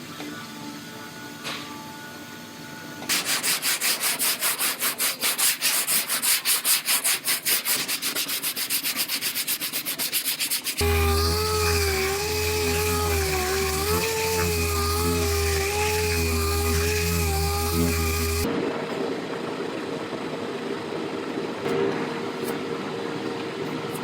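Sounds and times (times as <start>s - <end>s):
hand sanding sheet metal: 3.1s - 18.5s
power tool whine: 10.8s - 18.5s.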